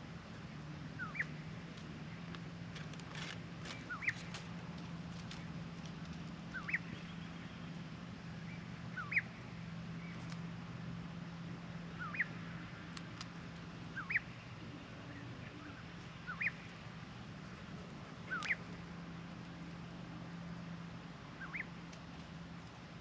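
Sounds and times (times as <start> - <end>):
faint low hum: 0.0 - 23.0
bird calling: 0.8 - 2.3, 3.1 - 4.6, 5.2 - 10.4, 11.8 - 20.4, 21.3 - 22.1.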